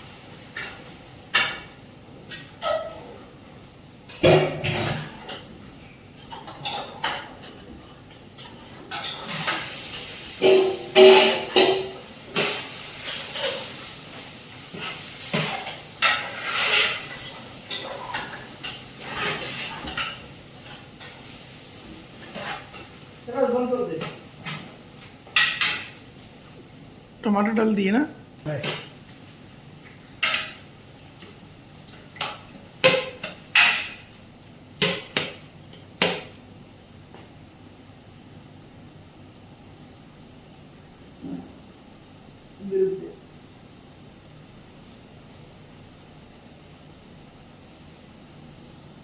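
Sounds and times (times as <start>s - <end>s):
food sizzling in hot oil: 8.9s - 23.3s.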